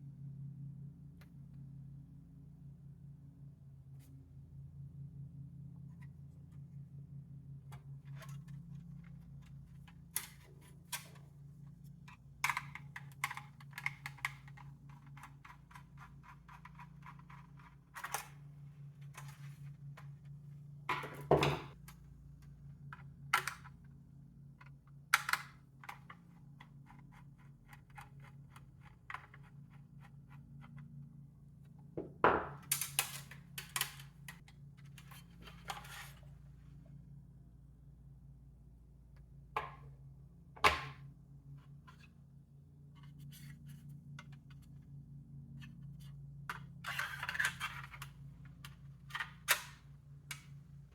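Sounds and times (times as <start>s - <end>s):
steady low hum: 0.0s - 50.9s
clicks and knocks of plastic and metal: 12.0s - 18.4s.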